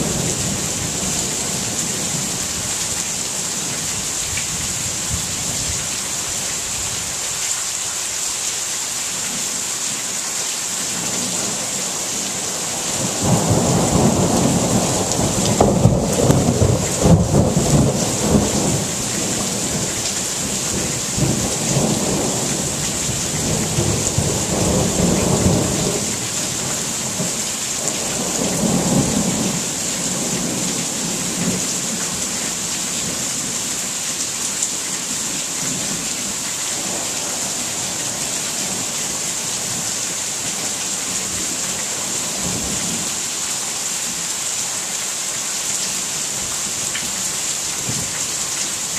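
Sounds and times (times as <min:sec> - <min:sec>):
steady rain: 0:00.0 - 0:48.9
thunder rumbling: 0:12.6 - 0:27.4, 0:28.1 - 0:31.6.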